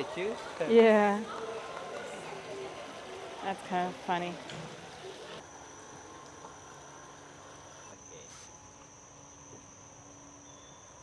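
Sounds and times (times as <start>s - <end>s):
faint outdoor background noise: 0.0s - 11.0s
insects calling: 0.0s - 11.0s.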